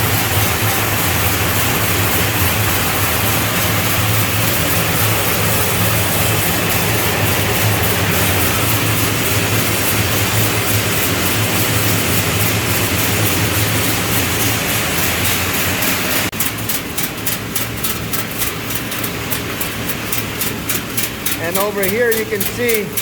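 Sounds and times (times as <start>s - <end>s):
sorting machine humming: 0.0s - 23.0s
high-pitched ticking: 16.4s - 23.0s.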